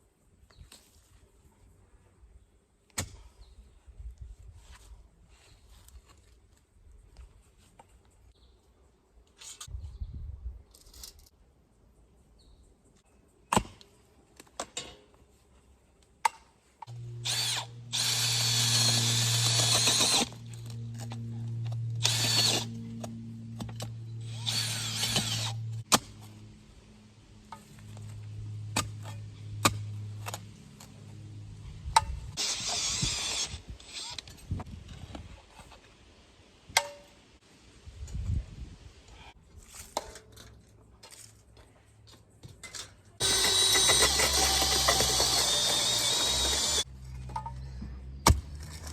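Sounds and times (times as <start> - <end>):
power drill grinding: 16.9 - 22.8, 24.2 - 25.8, 32.4 - 34.4, 43.2 - 46.9
low motor hum: 16.9 - 33.4, 43.2 - 48.9.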